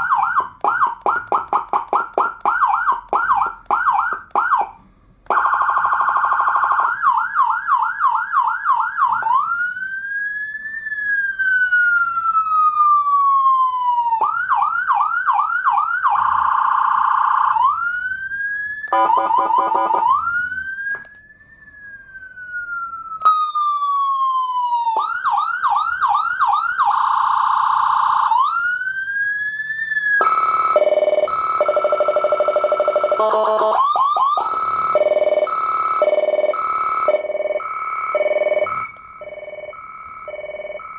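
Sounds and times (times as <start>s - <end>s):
electronic siren cycling tones: 18.9s - 21.2s, 22.1s - 29.0s, 30.0s - 40.9s.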